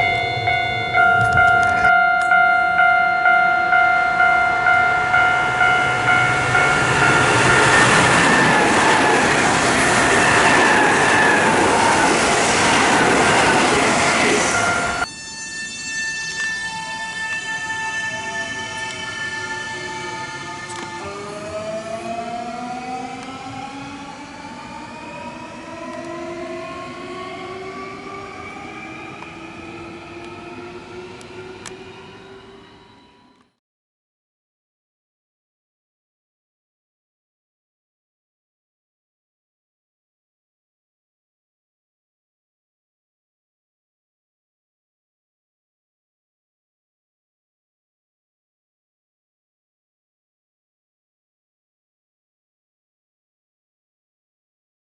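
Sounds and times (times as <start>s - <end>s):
level crossing warning bell: 0.0s - 9.4s, 13.3s - 22.7s
electric train passing: 0.0s - 33.6s.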